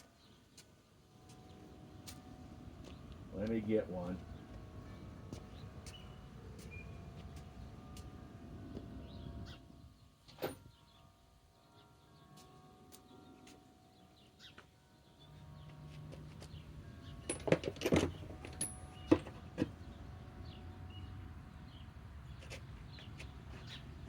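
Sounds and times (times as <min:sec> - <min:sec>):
low steady hum: 0:01.1 - 0:11.3
tools clicking and knocking: 0:17.2 - 0:19.7.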